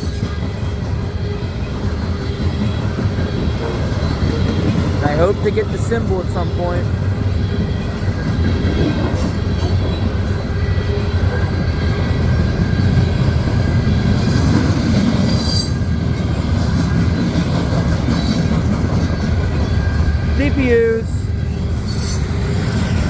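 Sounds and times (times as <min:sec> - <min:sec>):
train wheels rumbling on rail: 0:00.0 - 0:23.0
faint wheel squeal: 0:15.2 - 0:15.9, 0:21.4 - 0:23.0.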